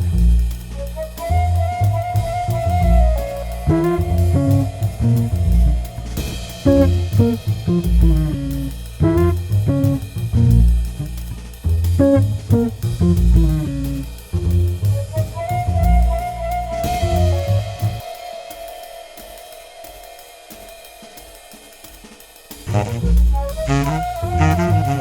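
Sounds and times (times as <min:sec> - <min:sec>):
bass: 0:00.0 - 0:18.1, 0:22.7 - 0:25.0
drums: 0:00.0 - 0:25.0
plucked guitar line: 0:06.7 - 0:10.0, 0:12.0 - 0:14.0.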